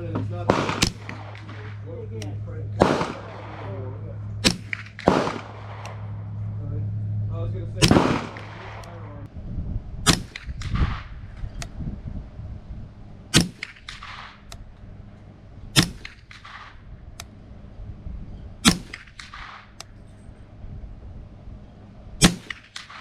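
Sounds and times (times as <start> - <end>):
rifle shots: 0.0 - 6.6, 7.7 - 9.3, 10.0 - 11.7, 13.3 - 14.8, 15.7 - 17.4, 18.6 - 20.0, 22.2 - 23.0
softer trailing report: 0.0 - 23.0.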